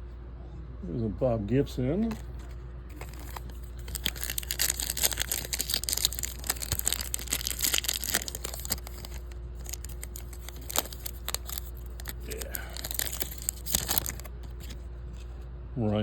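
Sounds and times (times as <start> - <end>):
foil wrapper crinkling and tearing: 2.0 - 14.8.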